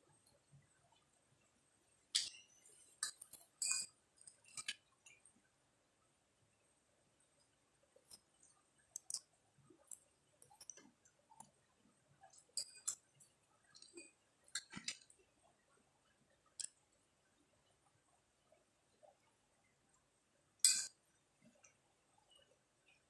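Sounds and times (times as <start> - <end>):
utensils tapping: 2.2 - 3.9
chewing clicks: 8.9 - 11.5.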